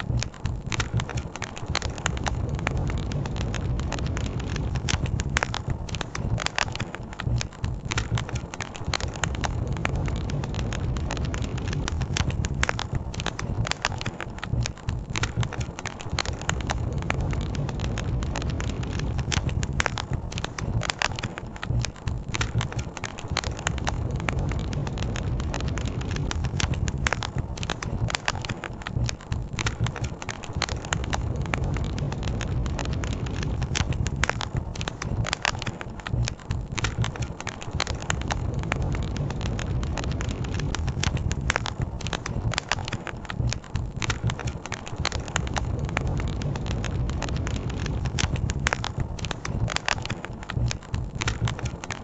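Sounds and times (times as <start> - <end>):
campfire crackling and popping: 0.0 - 52.0.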